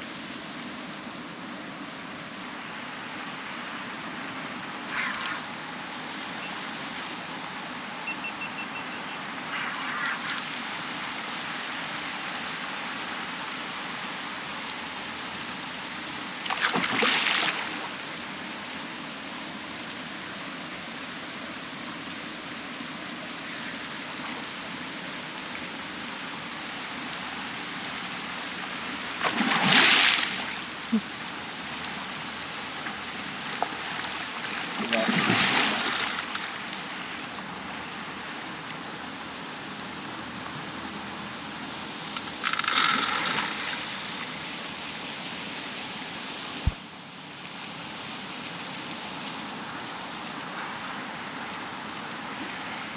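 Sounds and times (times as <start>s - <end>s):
fish splashing in water: 16.5s - 17.9s, 29.2s - 30.6s, 33.6s - 36.7s, 42.4s - 44.0s.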